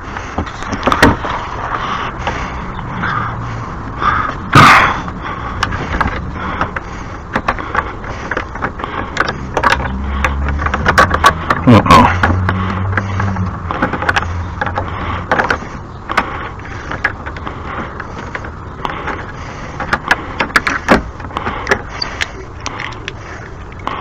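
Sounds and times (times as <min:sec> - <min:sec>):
low motor hum: 0:00.0 - 0:24.0
clicks and knocks of handling: 0:00.2 - 0:02.4, 0:04.2 - 0:24.0.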